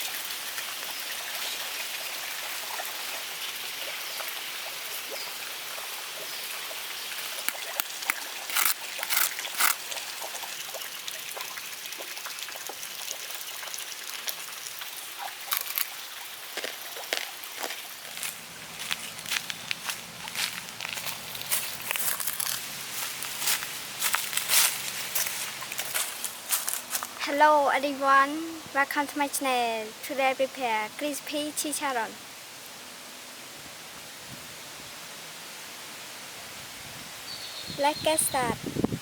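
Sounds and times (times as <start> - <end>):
loud sharp oil crackles: 7.1 - 10.4, 14.1 - 27.2.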